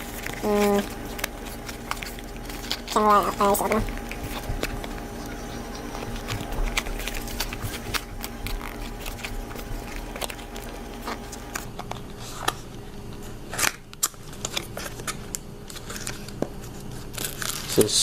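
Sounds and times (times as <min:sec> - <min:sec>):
packaging clicks taps and rustles: 0:00.0 - 0:12.6.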